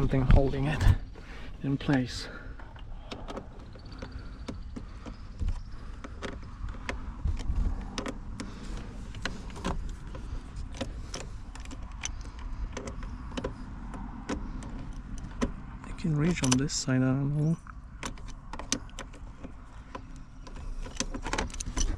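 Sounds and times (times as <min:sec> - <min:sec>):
hand tool clicks and knocks: 0:16.2 - 0:16.7.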